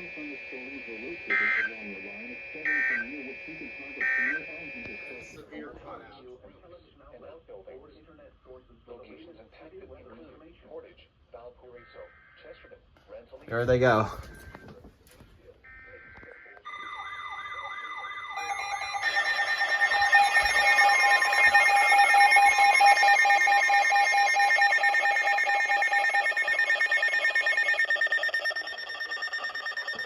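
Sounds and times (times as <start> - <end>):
steady alert tones: 0.0 - 5.4, 16.7 - 30.0
warbling alert tone: 16.7 - 30.0.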